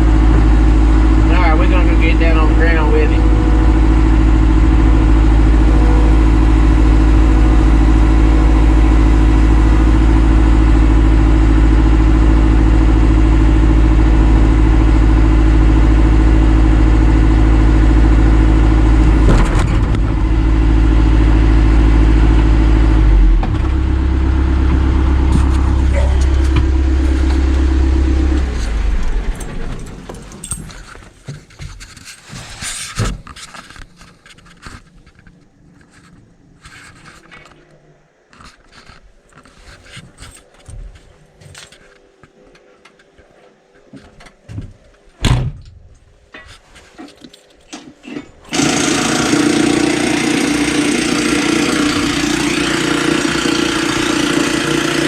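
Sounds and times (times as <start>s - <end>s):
vehicle engine running: 0.0s - 31.8s, 48.5s - 55.0s.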